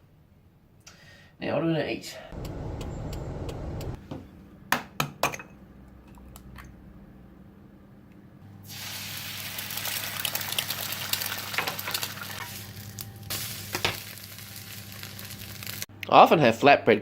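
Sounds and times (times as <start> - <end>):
food sizzling in a hot pan: 8.6 - 15.9.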